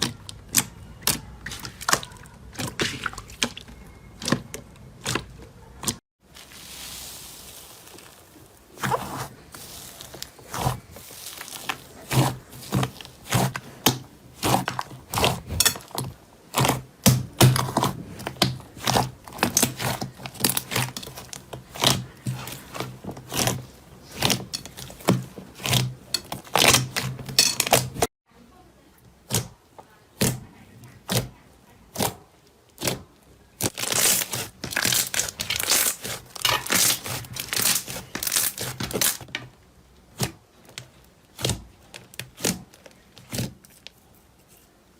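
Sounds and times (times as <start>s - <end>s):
slime crackling and popping: 33.6s - 39.3s.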